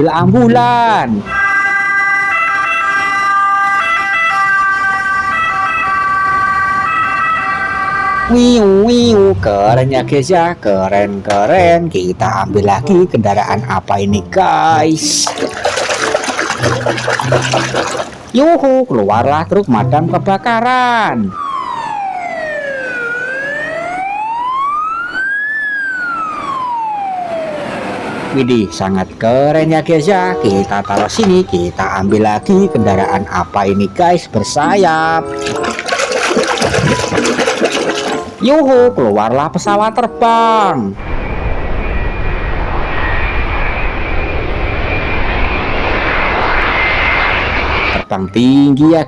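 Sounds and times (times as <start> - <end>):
electronic ambulance siren: 0.0 - 9.3, 19.8 - 29.2, 39.8 - 49.0.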